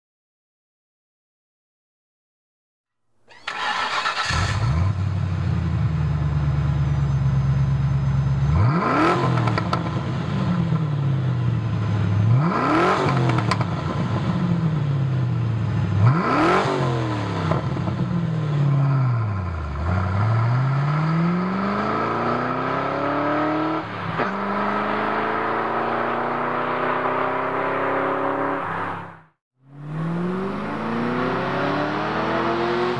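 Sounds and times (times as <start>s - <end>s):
car engine revving: 8.5s - 10.0s, 12.3s - 13.9s, 19.1s - 32.9s.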